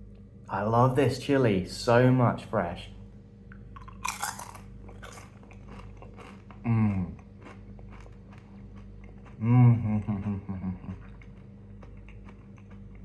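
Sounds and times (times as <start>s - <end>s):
crackly chewing: 3.5s - 13.0s
crunching dried chili pepper: 3.8s - 13.0s.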